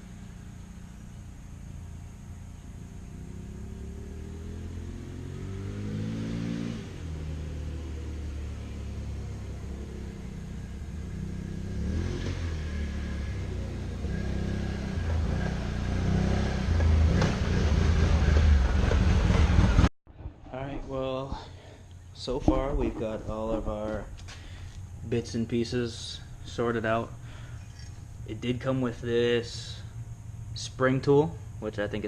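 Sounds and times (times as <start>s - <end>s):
atv engine accelerating: 0.0s - 19.9s.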